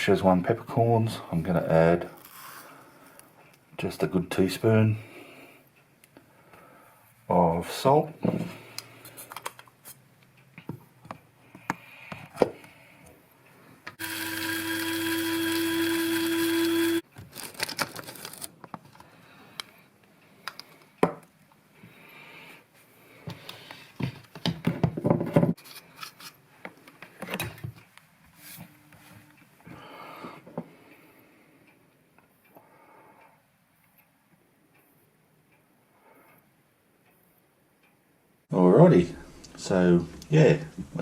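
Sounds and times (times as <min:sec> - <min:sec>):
electric spice grinder running: 0:14.0 - 0:17.0.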